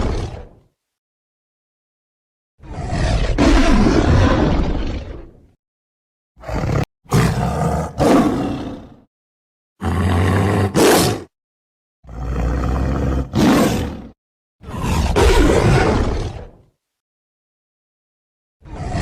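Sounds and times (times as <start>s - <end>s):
tiger roaring: 2.6s - 5.3s, 6.4s - 9.1s, 9.8s - 11.3s, 12.1s - 16.6s, 18.6s - 19.0s.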